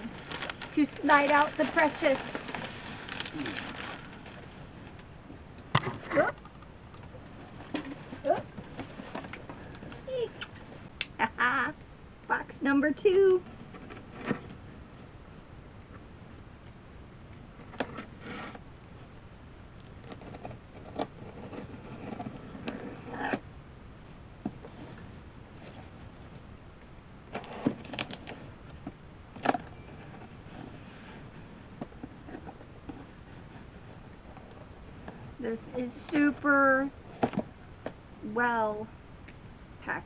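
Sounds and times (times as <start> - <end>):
cardboard box being handled: 0.1 - 4.5.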